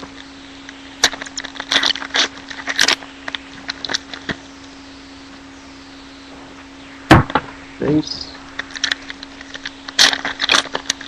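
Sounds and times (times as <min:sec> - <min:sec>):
faint steady hum: 0:00.0 - 0:11.0
foil pack tearing and crinkling: 0:01.0 - 0:04.3, 0:08.6 - 0:11.0.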